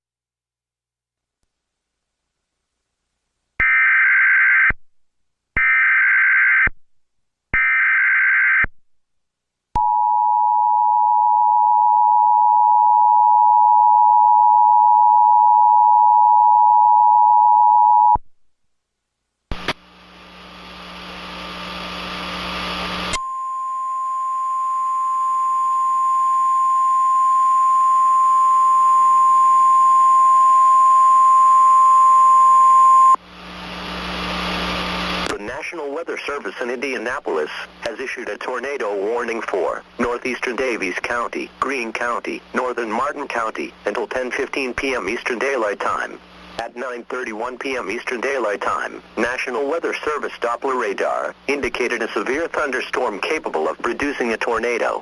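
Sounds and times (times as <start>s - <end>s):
static: 19.5s - 23.2s, 32.8s - 55.0s.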